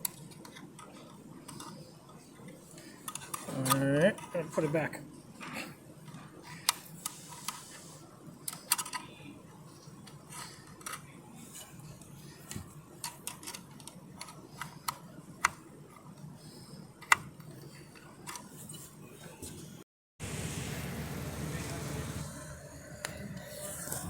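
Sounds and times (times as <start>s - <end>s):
small parts clicking and tapping: 0.0s - 4.8s, 5.4s - 16.2s, 16.9s - 18.9s.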